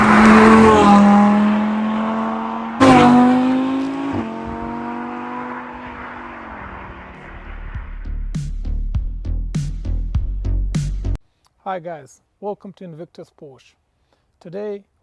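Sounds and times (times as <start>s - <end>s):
car engine revving: 0.0s - 8.3s.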